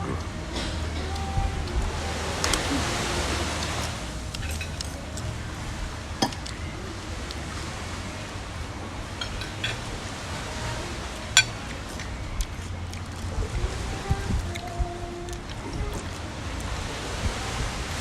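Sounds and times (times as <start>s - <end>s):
steady low rumble: 0.0s - 18.0s
utensils clinking on a bowl: 4.3s - 5.3s, 9.2s - 9.9s, 11.4s - 12.1s.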